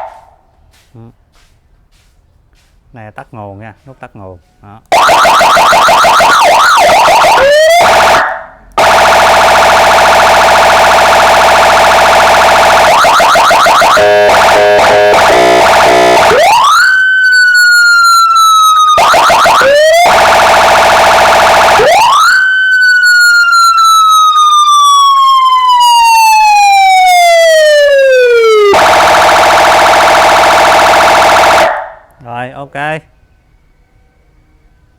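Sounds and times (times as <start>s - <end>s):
rising and falling siren wail: 4.9s - 32.1s
warbling siren yelp: 4.9s - 32.1s
steady electronic horn tone: 13.8s - 16.6s.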